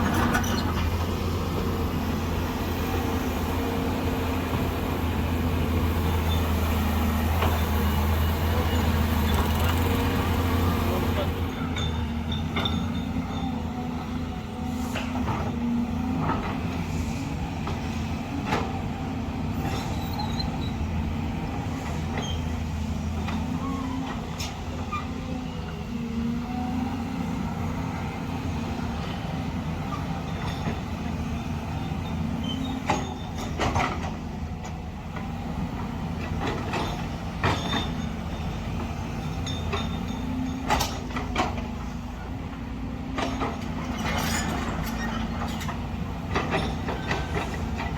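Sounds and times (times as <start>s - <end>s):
excavator diesel engine running: 0.0s - 47.9s.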